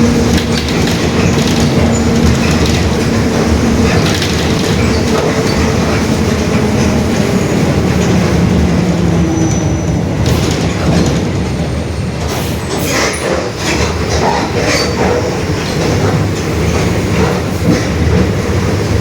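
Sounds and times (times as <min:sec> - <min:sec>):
knocks and rattles: 0:00.0 - 0:07.2
bus engine rumble: 0:00.0 - 0:19.0.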